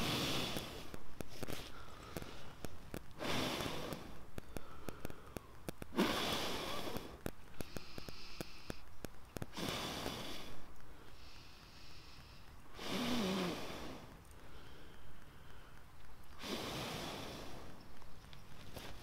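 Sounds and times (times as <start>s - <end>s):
person blowing into embers: 0.0s - 17.8s.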